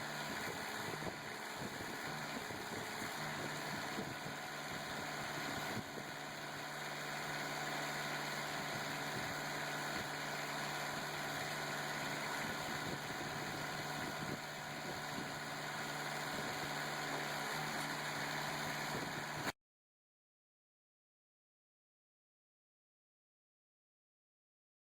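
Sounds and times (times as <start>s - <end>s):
hydraulic power unit running: 0.0s - 19.5s.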